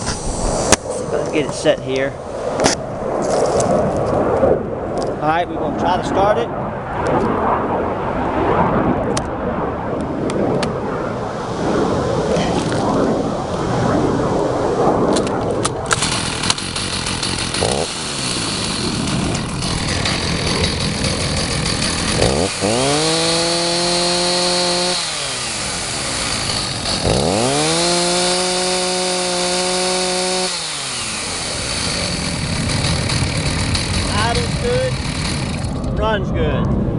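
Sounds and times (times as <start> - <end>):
chainsaw idling and revving: 15.9 - 35.9.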